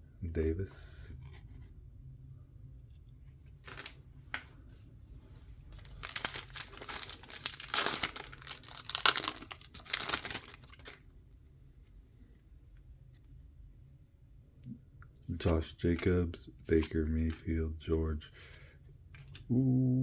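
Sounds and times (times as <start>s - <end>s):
foil wrapper tearing and crinkling: 3.6s - 4.0s, 5.8s - 11.0s.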